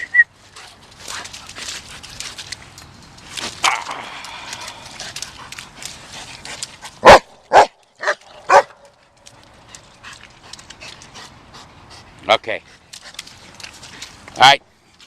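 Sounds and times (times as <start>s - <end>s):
dog barking: 7.0s - 8.8s.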